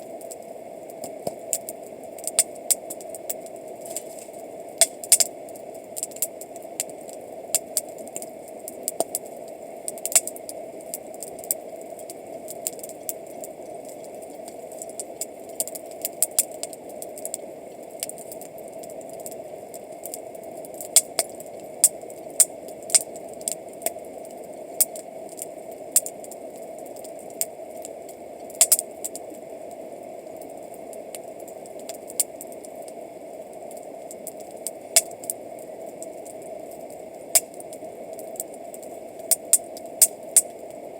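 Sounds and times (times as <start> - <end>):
campfire crackling and popping: 0.0 - 40.9.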